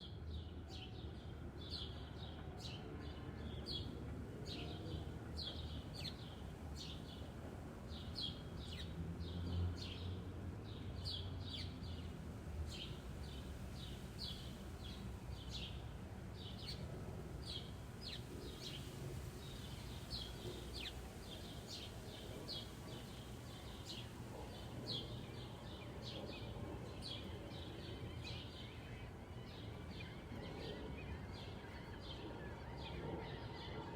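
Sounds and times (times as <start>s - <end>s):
low rumble of traffic: 0.0s - 33.9s
small birds chirping: 12.7s - 33.8s.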